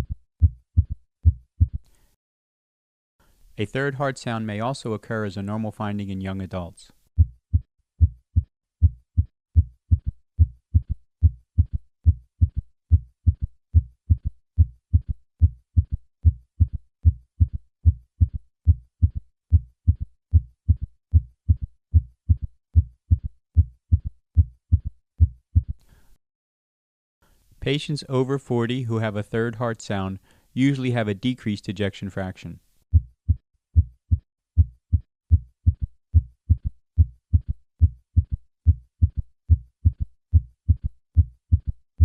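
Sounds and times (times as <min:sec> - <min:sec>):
heartbeat thuds through stethoscope: 0:00.0 - 0:01.8, 0:07.2 - 0:25.8, 0:32.9 - 0:41.8.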